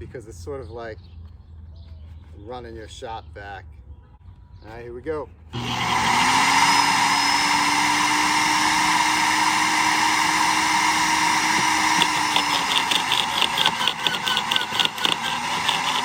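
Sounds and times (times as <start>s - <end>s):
wood chipper motor whine: 5.6s - 16.0s.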